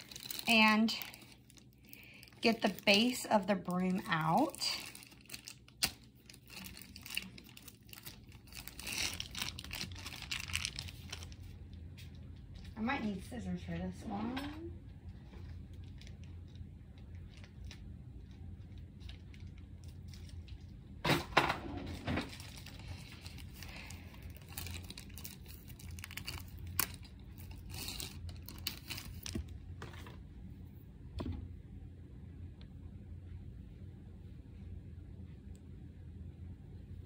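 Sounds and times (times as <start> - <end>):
packaging rustling and tearing: 0.0 - 11.7, 15.4 - 20.7, 21.9 - 30.2.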